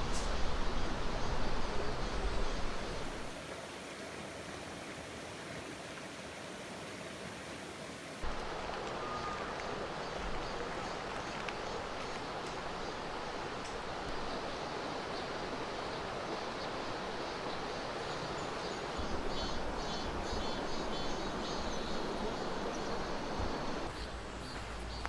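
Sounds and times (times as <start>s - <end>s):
water flowing over rocks: 2.6s - 8.9s.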